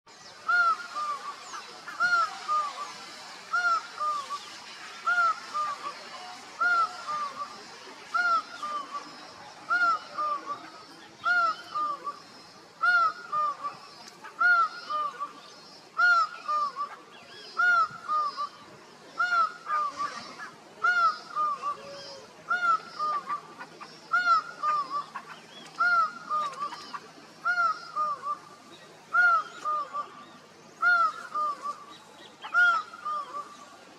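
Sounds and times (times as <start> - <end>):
laughing falcon calling: 19.2 - 33.7.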